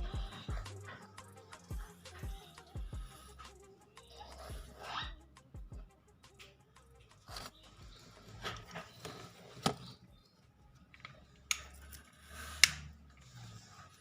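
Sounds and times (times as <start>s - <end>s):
sharp clicks: 11.0s - 13.0s.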